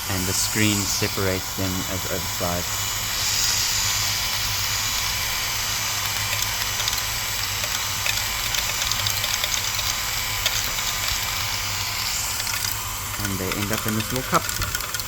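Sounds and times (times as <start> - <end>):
small motors humming: 0.0 - 15.0
beads rattling through screen: 6.0 - 11.3.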